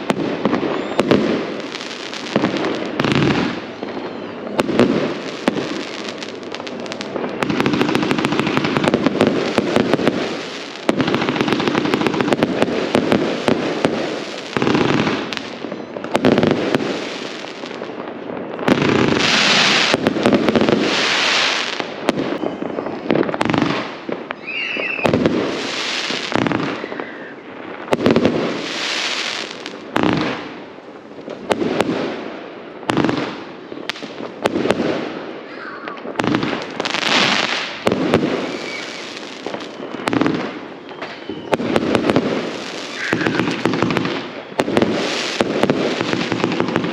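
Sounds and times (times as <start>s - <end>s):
fireworks banging and crackling: 0.0s - 46.9s
firework whistle rising: 24.3s - 27.4s, 38.3s - 40.2s, 42.6s - 43.7s.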